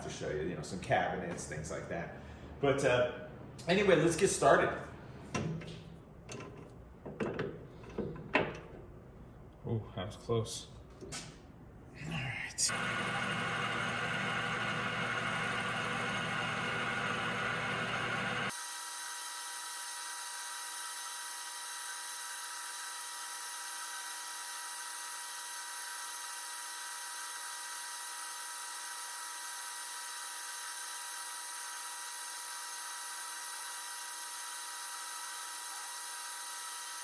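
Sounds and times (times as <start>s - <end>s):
metal lathe whining: 12.7s - 37.0s.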